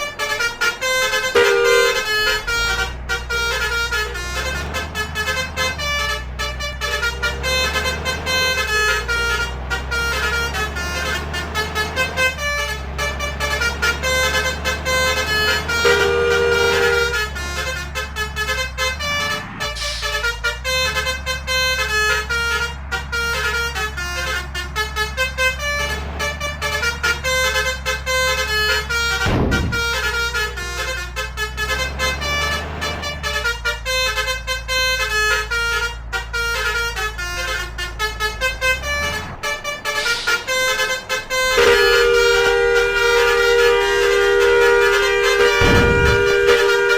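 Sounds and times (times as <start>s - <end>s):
low engine drone: 0.0s - 46.9s
multi-tone musical horns: 0.0s - 46.9s.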